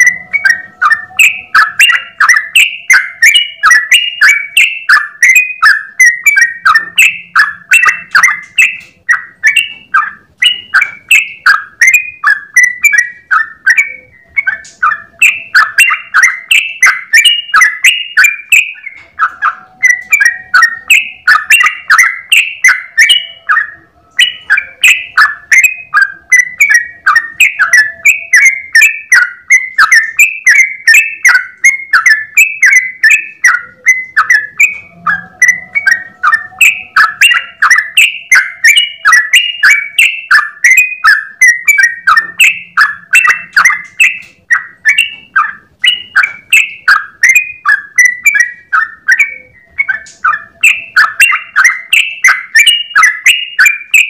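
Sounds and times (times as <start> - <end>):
bulbul singing bubbly whistles: 0.0 - 54.0.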